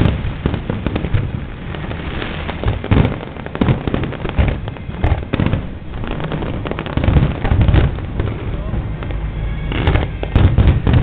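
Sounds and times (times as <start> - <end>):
fireworks booming: 0.0 - 11.0
fireworks crackling: 0.0 - 11.0.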